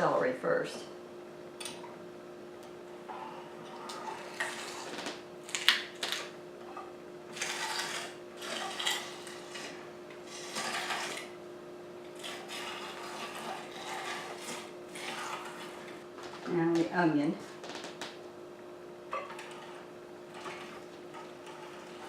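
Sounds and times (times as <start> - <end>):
meat grinder crunching celery: 3.8 - 6.3, 7.3 - 11.4, 12.0 - 16.0, 19.3 - 22.0.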